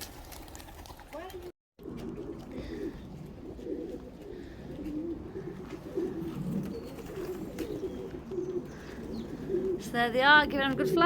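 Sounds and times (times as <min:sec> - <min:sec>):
pigeons cooing: 0:02.0 - 0:11.0.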